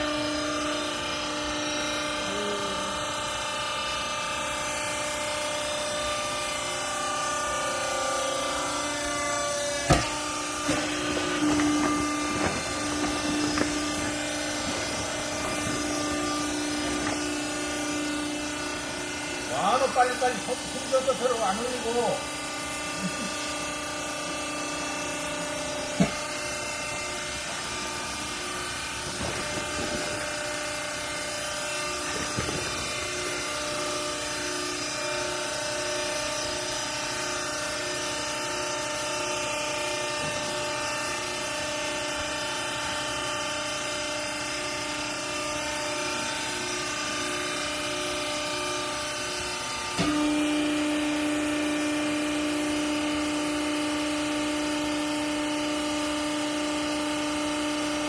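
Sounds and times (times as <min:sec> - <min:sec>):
electric motor and pump humming: 0:00.0 - 0:58.0.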